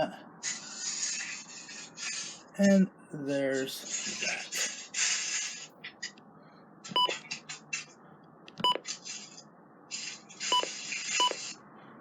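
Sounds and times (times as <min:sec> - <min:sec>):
electronic button beeps: 0:06.9 - 0:07.2, 0:08.6 - 0:08.8.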